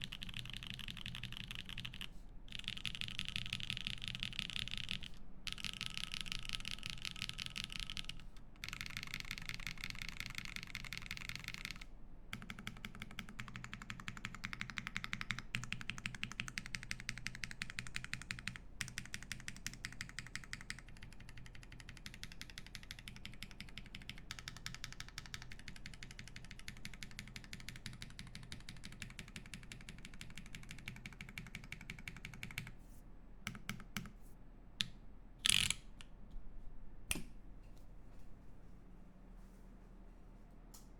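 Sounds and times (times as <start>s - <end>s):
fast typing on mechanical keyboard: 0.0s - 32.7s.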